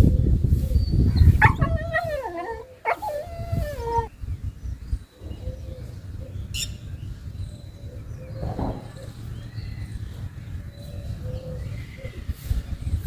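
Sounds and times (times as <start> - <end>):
dog whining: 1.2 - 4.1.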